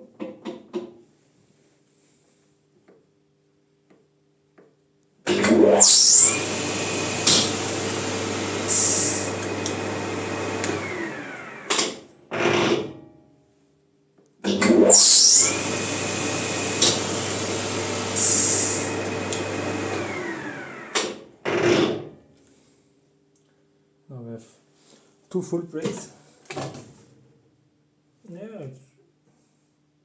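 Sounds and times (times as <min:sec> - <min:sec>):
lathe running and braking: 0:05.3 - 0:12.5, 0:14.5 - 0:21.2.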